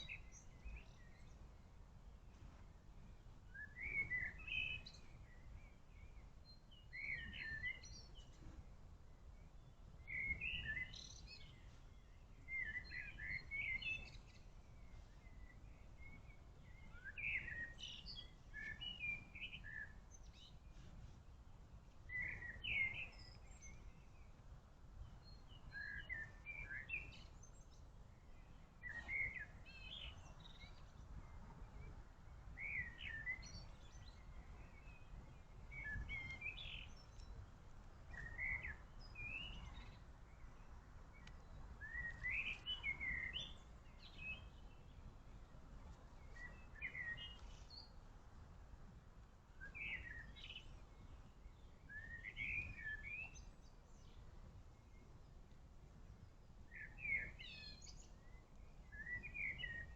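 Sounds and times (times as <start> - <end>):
songbirds chirping: 0.0 - 59.9.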